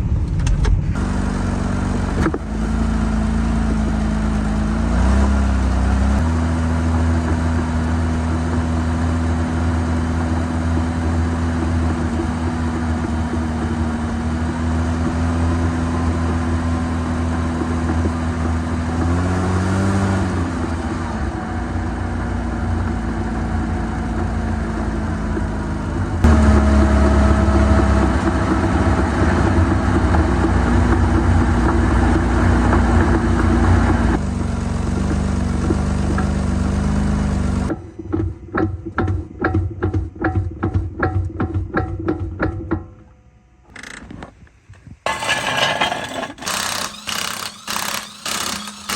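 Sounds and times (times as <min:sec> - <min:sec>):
car engine: 0:00.0 - 0:37.8
road noise: 0:00.0 - 0:37.8.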